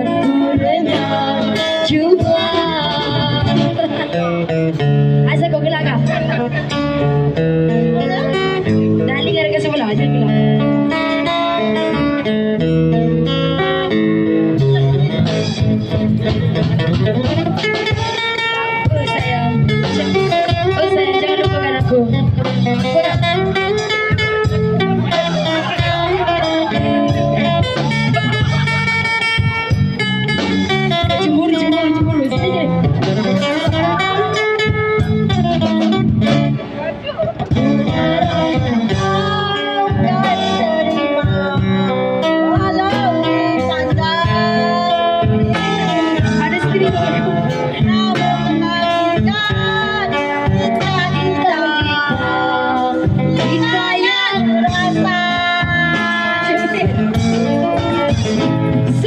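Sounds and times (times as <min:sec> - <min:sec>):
woman singing slow song: 0:00.0 - 0:04.2, 0:31.0 - 0:32.8, 0:37.9 - 0:57.2
instrumental band music with guitar: 0:00.0 - 0:59.0.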